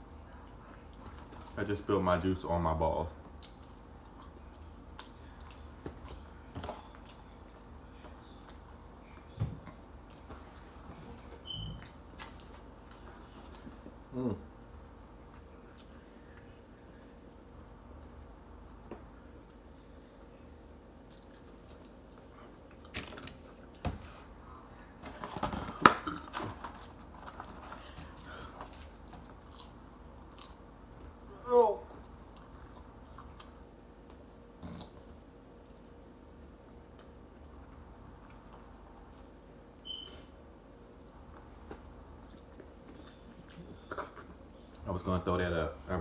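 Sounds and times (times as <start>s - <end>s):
person chewing: 3.3s - 10.8s, 15.2s - 16.6s, 27.4s - 30.7s.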